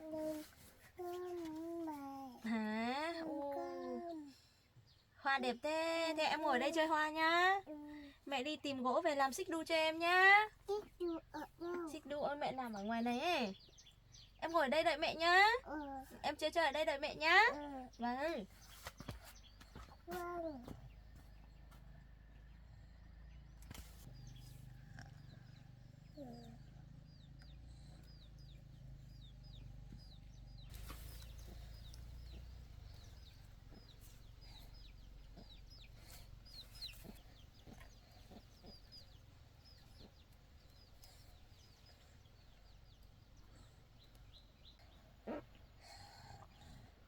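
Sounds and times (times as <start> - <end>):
chicks peeping: 24.1 - 45.8.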